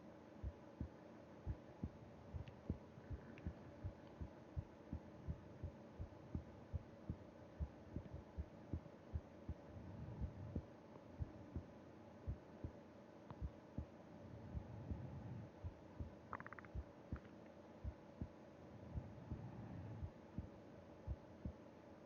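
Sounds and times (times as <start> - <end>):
heartbeat thumps: 0.4 - 11.7, 12.3 - 18.3, 18.9 - 21.6
soft slow breathing: 14.2 - 15.8, 18.6 - 20.4.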